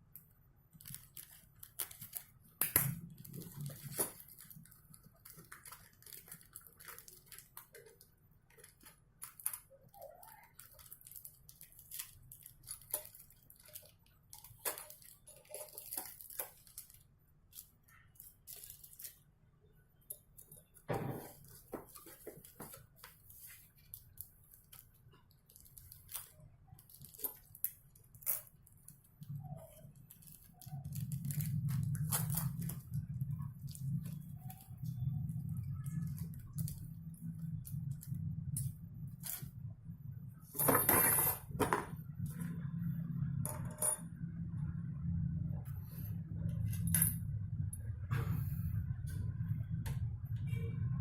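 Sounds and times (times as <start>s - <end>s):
steady low hum: 30.9s - 51.0s.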